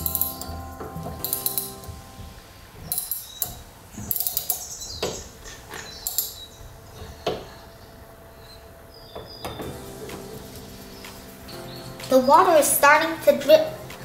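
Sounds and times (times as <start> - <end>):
metallic clicks and knocks of valves: 2.9 - 4.6.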